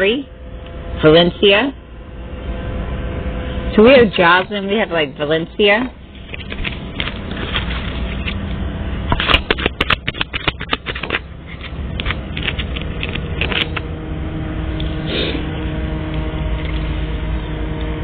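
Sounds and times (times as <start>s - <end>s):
steady low hum: 0.0s - 18.0s
cards being shuffled: 6.2s - 8.4s, 9.1s - 13.8s.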